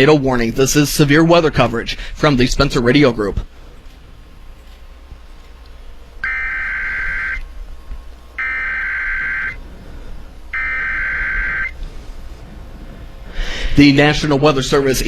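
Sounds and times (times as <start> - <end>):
buzzy digital data tones: 6.2 - 7.4, 8.4 - 9.6, 10.5 - 11.7.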